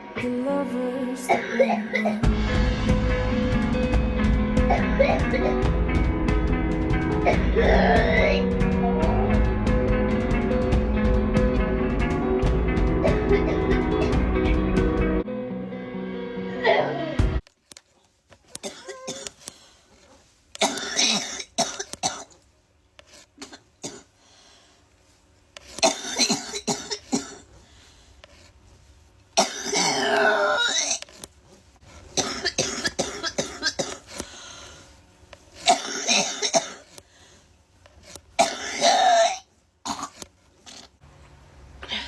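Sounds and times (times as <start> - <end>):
person coughing: 1.3 - 2.2, 4.7 - 5.7, 7.2 - 8.5, 18.6 - 19.4, 25.8 - 27.4, 29.4 - 31.1, 32.2 - 34.1, 35.6 - 36.9, 38.4 - 40.2.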